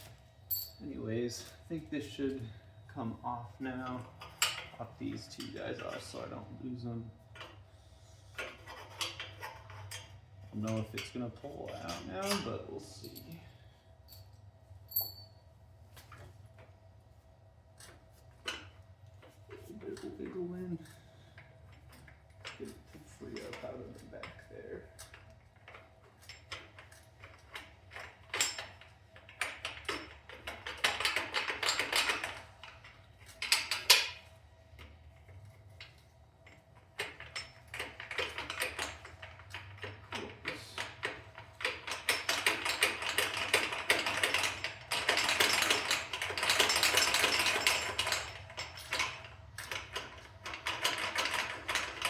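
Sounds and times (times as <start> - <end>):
metal clicks and knocks: 17.8 - 34.3, 35.8 - 52.0.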